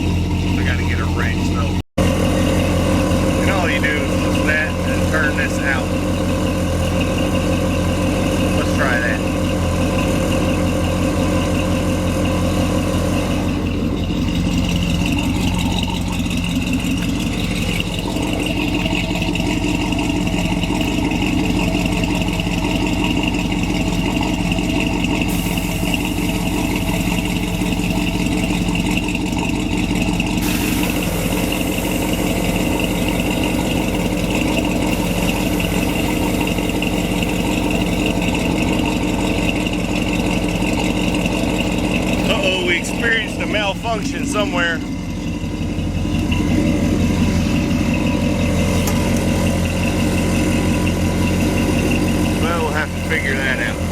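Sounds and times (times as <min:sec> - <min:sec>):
truck engine idling: 0:00.0 - 0:53.9
air hissing from suspension: 0:30.3 - 0:37.5.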